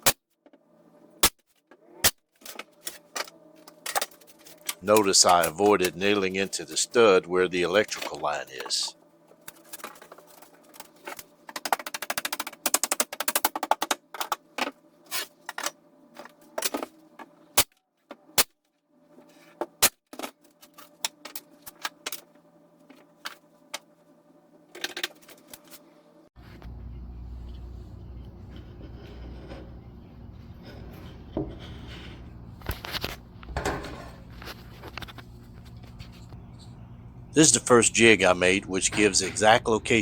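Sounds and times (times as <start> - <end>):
faint steady hum: 0.4 - 40.0
low steady rumble: 26.4 - 38.0.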